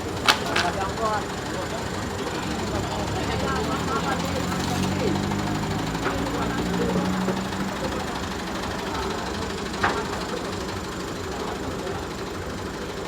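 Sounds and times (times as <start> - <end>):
machine rattling: 0.0 - 1.2.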